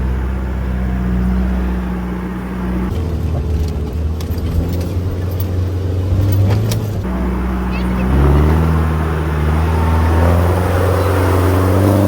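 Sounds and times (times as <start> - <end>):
truck engine running under load: 0.0 - 12.0
sharp clicks and knocks: 2.9 - 7.1.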